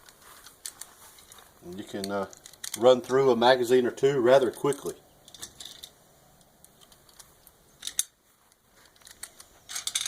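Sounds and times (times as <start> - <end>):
handling clicks and knocks: 0.0 - 3.4, 4.3 - 10.0.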